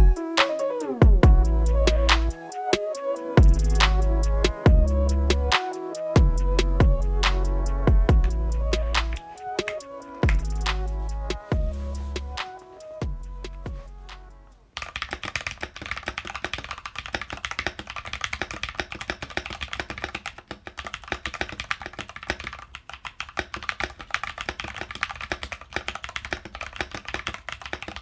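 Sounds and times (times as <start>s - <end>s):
background music: 0.0s - 14.7s
fast keyboard typing: 8.9s - 10.5s, 14.8s - 28.0s.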